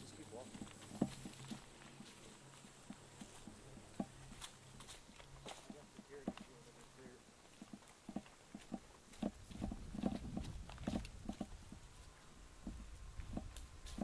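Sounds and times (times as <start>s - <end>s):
footsteps: 0.0s - 14.0s
low rumble on microphone: 9.3s - 14.0s.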